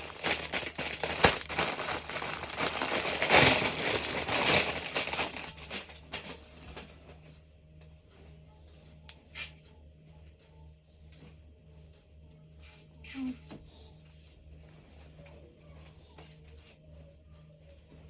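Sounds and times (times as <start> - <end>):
plastic packaging crinkling: 0.0 - 6.2.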